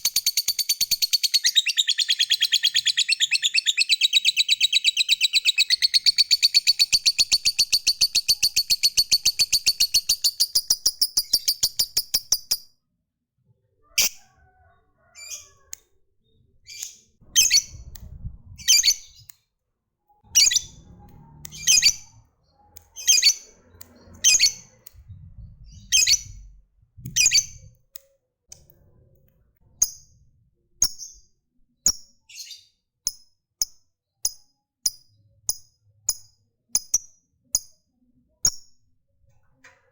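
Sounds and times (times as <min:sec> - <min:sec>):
lovebird chirping and calling: 0:00.0 - 0:12.7, 0:15.2 - 0:15.8, 0:16.6 - 0:19.3, 0:20.3 - 0:27.7.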